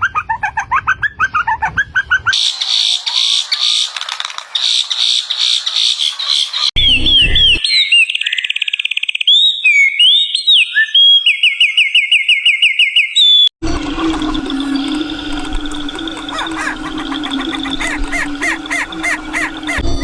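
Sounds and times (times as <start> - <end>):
bird harsh fast chattering: 0.1 - 8.0, 16.2 - 19.8
bird rapid trill: 0.8 - 10.1, 14.7 - 20.0.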